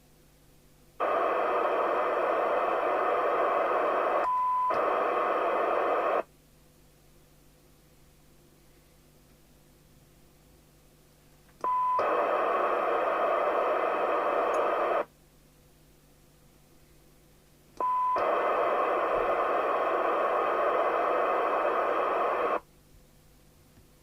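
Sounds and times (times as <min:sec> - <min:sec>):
radio squelch click: 0:01.0 - 0:06.2, 0:11.6 - 0:15.1, 0:17.8 - 0:22.6
radio receiver hiss: 0:01.0 - 0:06.3, 0:11.6 - 0:15.1, 0:17.8 - 0:22.7
short steady beep: 0:04.2 - 0:04.8.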